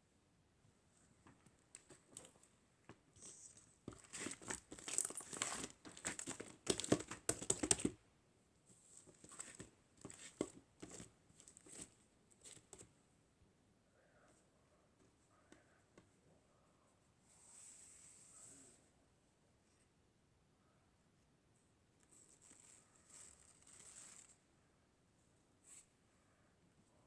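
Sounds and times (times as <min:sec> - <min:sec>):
material crinkling: 0:03.1 - 0:08.0, 0:09.0 - 0:12.9, 0:22.1 - 0:24.4.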